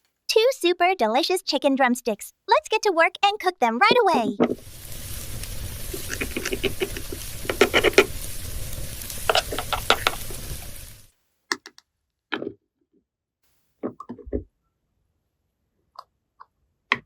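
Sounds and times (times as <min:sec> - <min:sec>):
chicken sizzling in a pan: 0:04.5 - 0:11.1
utensil tapping and scraping pan: 0:06.0 - 0:08.2, 0:09.2 - 0:10.3.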